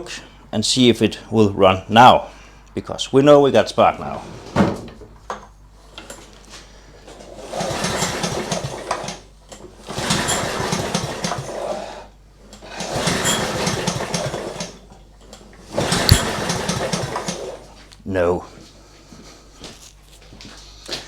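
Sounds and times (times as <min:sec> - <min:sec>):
lawn mower engine cranking: 0:07.1 - 0:11.8, 0:12.5 - 0:17.8.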